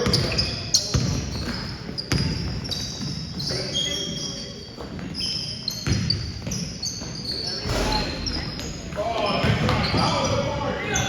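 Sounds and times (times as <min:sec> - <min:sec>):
basketball bouncing on gym floor: 0:00.0 - 0:03.2, 0:05.8 - 0:06.8, 0:07.6 - 0:10.1
sneakers squeaking on court: 0:00.0 - 0:11.0.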